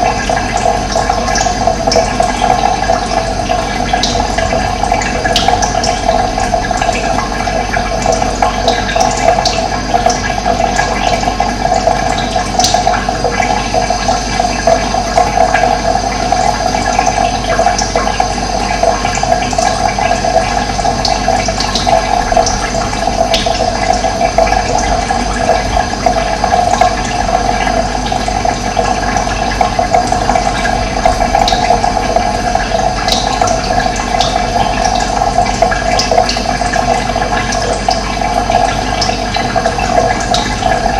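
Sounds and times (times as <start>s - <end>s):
rushing water: 16.3s - 40.9s.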